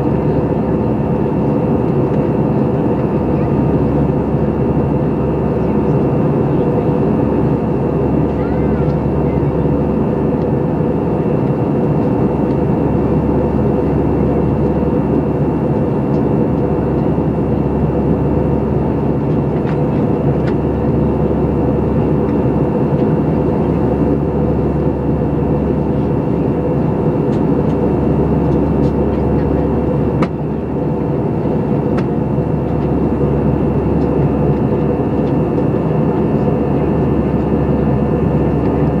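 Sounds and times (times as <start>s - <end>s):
airplane cabin drone: 0.0s - 39.0s.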